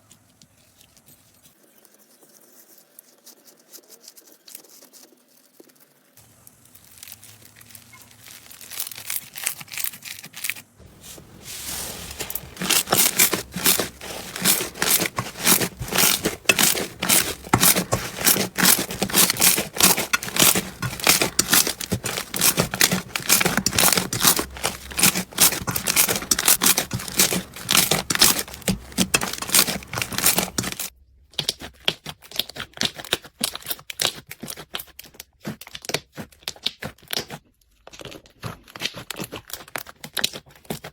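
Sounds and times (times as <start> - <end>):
slime crackling and popping: 6.4 - 31.6.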